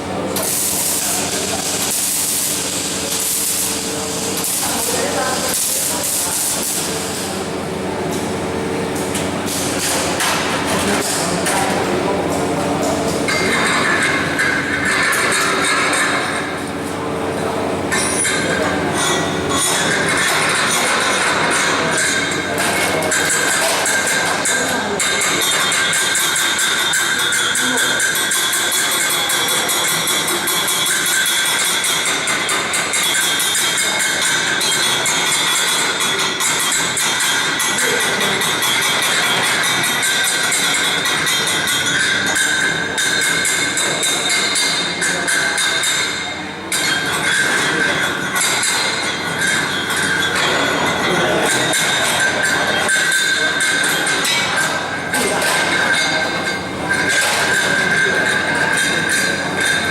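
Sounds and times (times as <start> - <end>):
machine hum: 0.0 - 59.9
arc welding crackling sizzle: 0.2 - 11.9, 18.0 - 44.5
welding hiss: 0.3 - 7.5.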